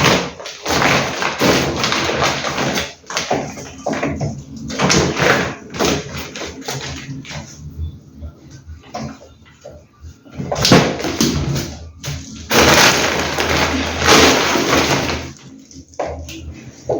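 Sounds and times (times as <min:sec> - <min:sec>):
plastic bags crinkling and rustling: 0:00.0 - 0:07.4, 0:10.6 - 0:15.9.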